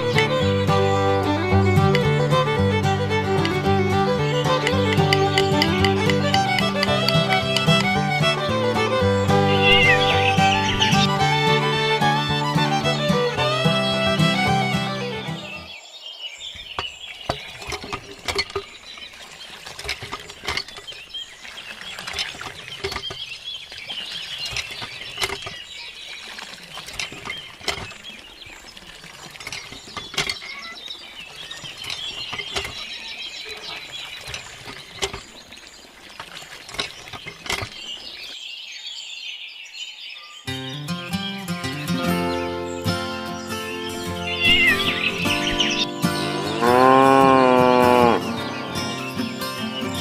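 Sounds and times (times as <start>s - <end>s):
small clicks and taps: 4.6s - 7.9s.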